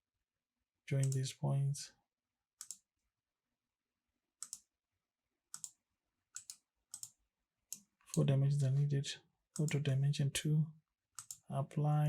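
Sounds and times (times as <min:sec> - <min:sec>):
computer mouse clicking: 0:02.6 - 0:02.9, 0:04.4 - 0:04.7, 0:05.5 - 0:08.3, 0:09.6 - 0:09.9, 0:11.2 - 0:11.4.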